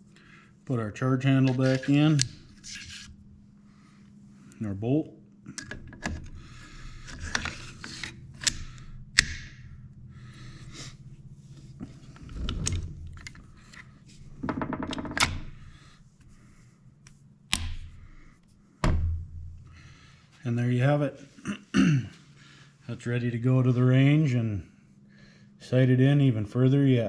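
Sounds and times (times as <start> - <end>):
rifle parts sliding and scraping: 1.4 - 3.2.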